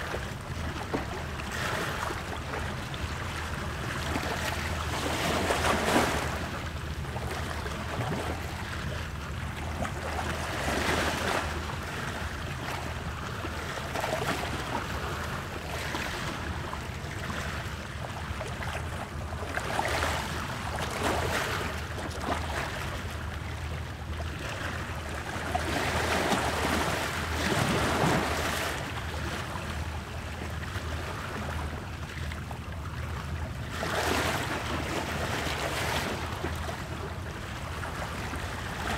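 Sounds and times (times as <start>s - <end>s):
ocean waves breaking: 3.0s - 8.8s, 25.4s - 29.7s.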